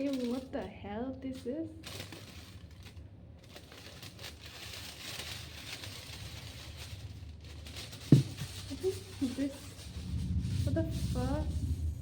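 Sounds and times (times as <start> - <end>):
packaging rustling: 0.0 - 11.6
steady low hum: 6.3 - 12.0.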